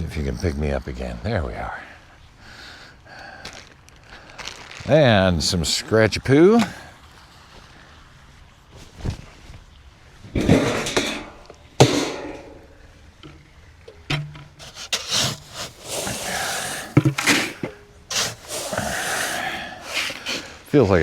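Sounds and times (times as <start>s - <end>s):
grain scooped and poured: 14.6s - 20.6s.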